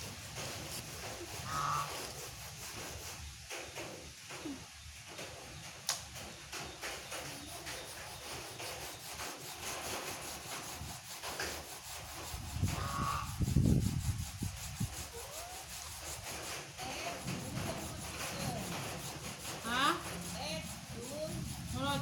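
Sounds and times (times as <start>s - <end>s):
geese shuffling and rustling: 0.0s - 22.0s
goose honk: 1.5s - 2.0s, 12.8s - 13.3s.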